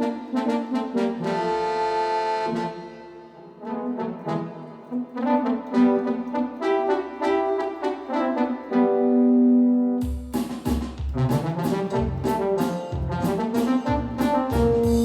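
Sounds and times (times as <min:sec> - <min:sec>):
synthesizer brass-like phrase: 0:00.0 - 0:10.0, 0:11.2 - 0:15.0
synth bass notes and chords: 0:12.0 - 0:15.0.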